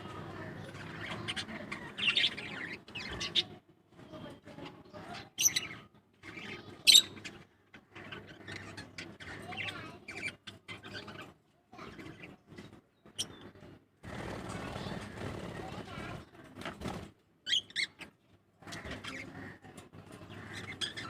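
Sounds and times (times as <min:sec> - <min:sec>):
parrots chirping and squeaking: 0:00.6 - 0:03.6, 0:05.0 - 0:13.4, 0:17.4 - 0:21.0.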